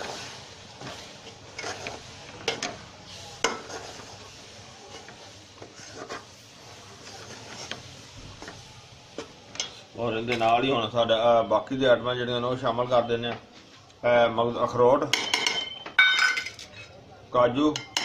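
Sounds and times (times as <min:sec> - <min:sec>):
spoon stirring thick mixture: 0:00.0 - 0:10.9
spoon knocking metal pot: 0:15.1 - 0:16.5.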